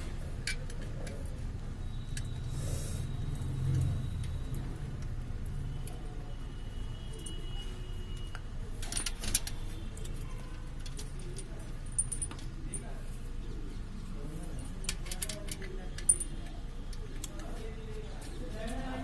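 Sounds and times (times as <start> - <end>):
metal tools clinking: 8.7 - 13.3, 14.6 - 18.9.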